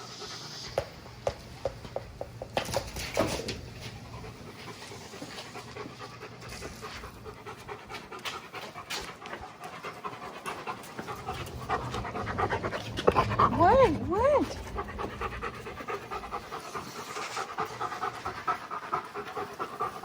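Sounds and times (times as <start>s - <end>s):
dog panting: 0.0s - 2.4s, 3.6s - 20.0s.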